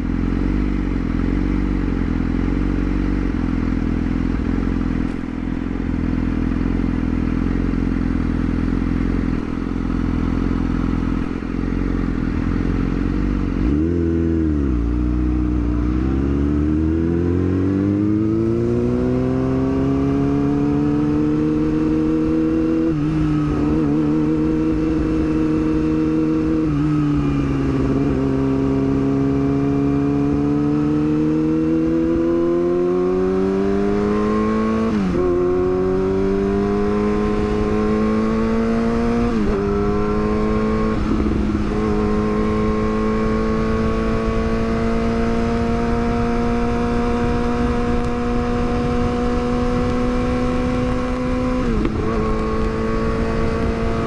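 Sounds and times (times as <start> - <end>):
motorcycle engine accelerating: 0.0 - 54.0.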